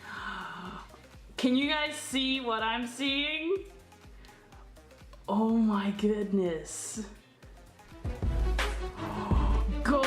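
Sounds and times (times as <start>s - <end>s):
music with deep bass: 7.5s - 10.0s.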